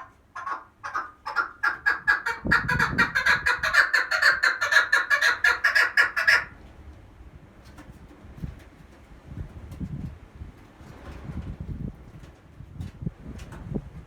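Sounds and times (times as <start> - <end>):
partridge clucking call: 0.0 - 6.5.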